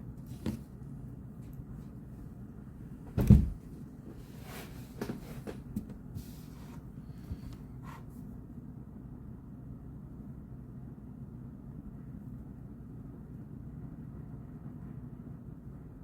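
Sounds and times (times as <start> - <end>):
steady low hum: 0.0 - 16.0
dull thump: 3.1 - 3.6.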